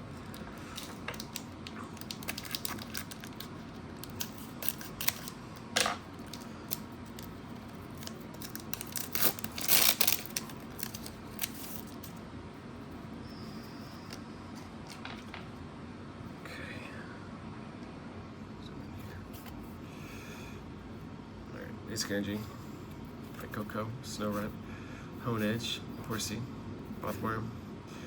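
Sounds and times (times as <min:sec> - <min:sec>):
foil wrapper crinkling and tearing: 0:00.2 - 0:12.1.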